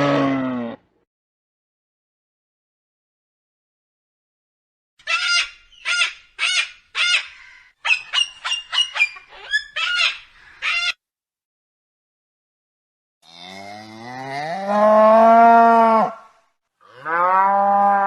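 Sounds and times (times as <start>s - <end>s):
bird harsh calls: 5.0s - 11.0s.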